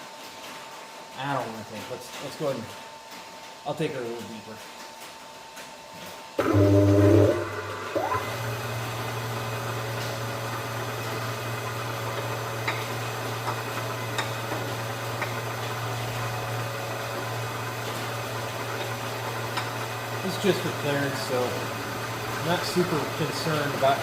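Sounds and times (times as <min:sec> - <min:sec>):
milling machine humming: 0:06.4 - 0:24.0.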